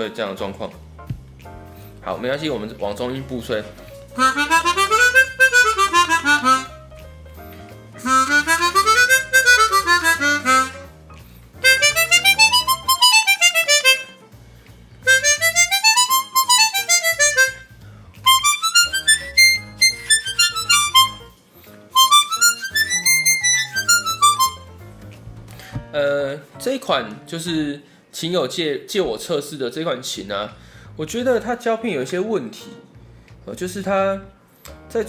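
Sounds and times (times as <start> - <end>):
harmonica playing scale runs: 4.2 - 6.9, 8.0 - 11.0, 11.6 - 14.3, 15.0 - 24.8.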